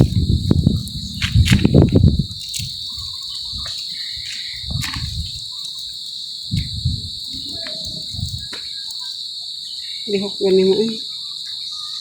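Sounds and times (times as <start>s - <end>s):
low dull thumps: 0.0s - 2.8s
crickets chirring: 0.0s - 12.0s.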